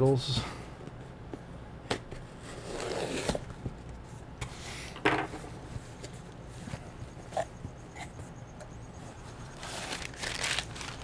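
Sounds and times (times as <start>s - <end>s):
cardboard box rustling: 9.3s - 11.0s.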